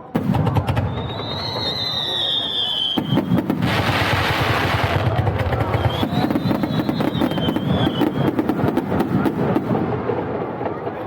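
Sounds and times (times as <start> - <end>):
fireworks booming and cracking: 0.0 - 11.0
high thin whistle: 0.8 - 3.2, 5.8 - 8.3.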